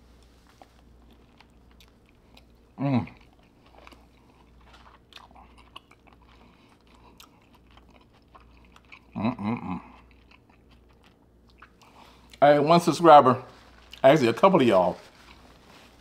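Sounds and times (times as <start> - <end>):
close chewing: 0.2 - 12.5, 13.6 - 16.0
person humming mm: 2.8 - 3.2, 9.2 - 10.0.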